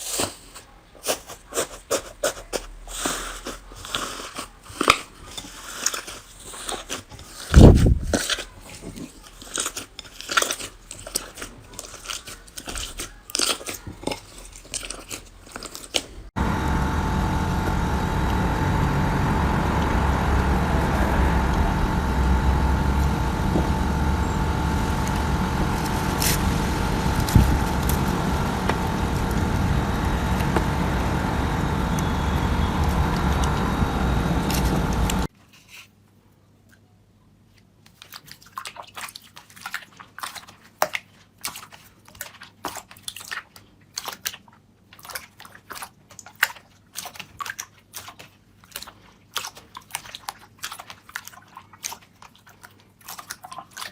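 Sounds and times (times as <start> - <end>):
faint hum: 16.4 - 35.3
steady even noise: 16.4 - 35.3.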